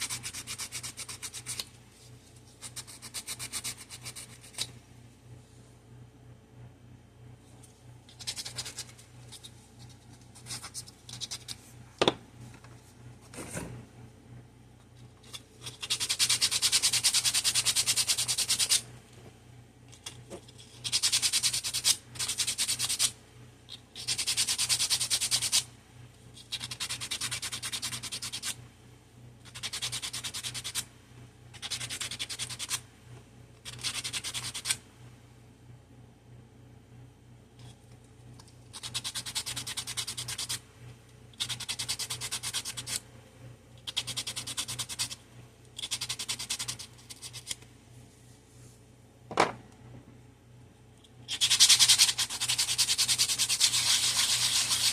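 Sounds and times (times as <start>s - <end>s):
sandpaper scratching on wood: 51.3s - 54.9s.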